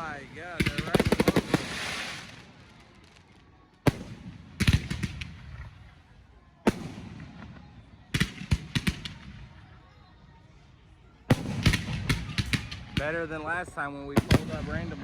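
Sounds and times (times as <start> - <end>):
firework bangs echoing: 0.0 - 2.4, 14.2 - 15.0.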